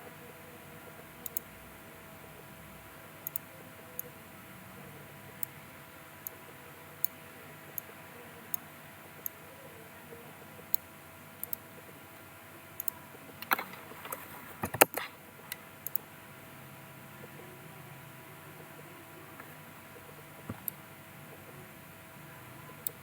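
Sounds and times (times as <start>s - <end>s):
computer mouse clicks: 1.2s - 1.5s, 3.2s - 4.1s, 10.7s - 11.6s, 12.8s - 16.1s, 20.5s - 20.8s.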